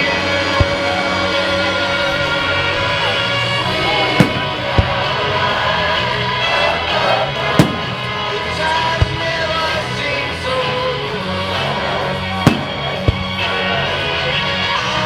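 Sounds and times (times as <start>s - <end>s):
firework bangs: 0.0s - 10.5s, 11.2s - 14.8s
music playing: 0.0s - 15.0s
dull thud: 0.5s - 1.2s, 4.1s - 5.2s, 7.5s - 8.1s, 8.9s - 9.5s, 12.4s - 13.5s.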